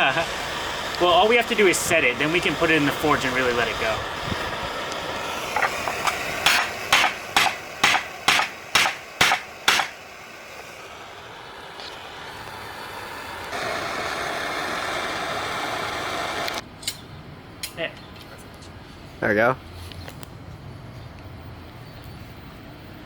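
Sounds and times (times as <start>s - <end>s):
steady rushing noise: 0.0s - 16.7s
hammer striking steel: 5.6s - 10.0s.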